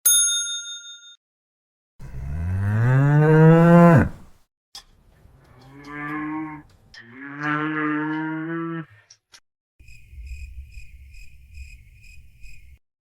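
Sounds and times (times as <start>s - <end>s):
long low animal calls: 2.0s - 4.2s.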